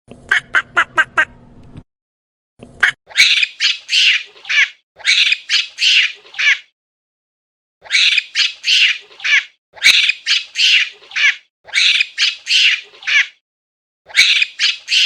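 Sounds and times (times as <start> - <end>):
bird squawking: 3.1 - 6.7, 7.8 - 13.4, 14.1 - 15.0.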